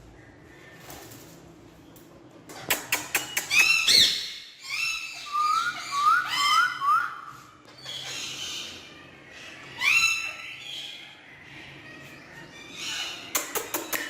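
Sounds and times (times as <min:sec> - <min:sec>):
parrot whistling and squawking: 0:03.2 - 0:11.2.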